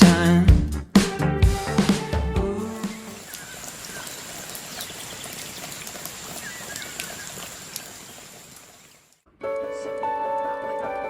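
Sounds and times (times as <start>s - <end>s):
background music: 0.0s - 3.2s, 9.3s - 11.0s.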